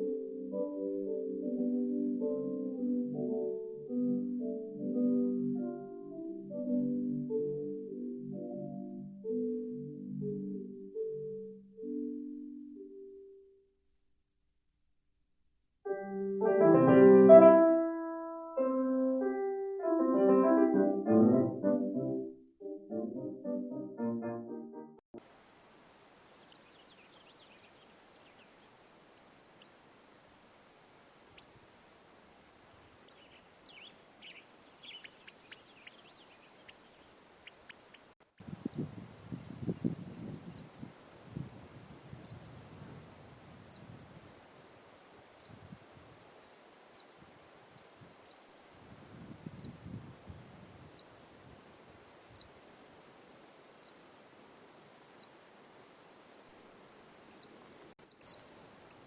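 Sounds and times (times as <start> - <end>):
small animal chip calls: 34.2 - 39.6, 40.5 - 41.2, 42.2 - 43.0, 43.7 - 44.0, 45.4 - 45.8, 46.4 - 47.3, 48.1 - 48.6, 49.3 - 49.8, 50.9 - 51.4, 52.4 - 52.8, 53.8 - 54.3, 55.2 - 56.1, 57.4 - 59.0.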